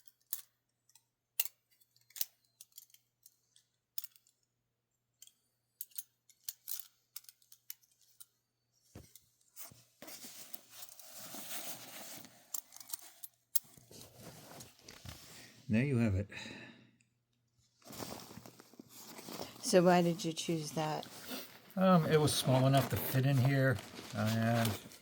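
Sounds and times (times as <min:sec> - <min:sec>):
thin metal parts clinking: 0:00.0 - 0:04.5, 0:05.2 - 0:08.4, 0:12.5 - 0:13.7
scraping rustle: 0:17.8 - 0:25.0.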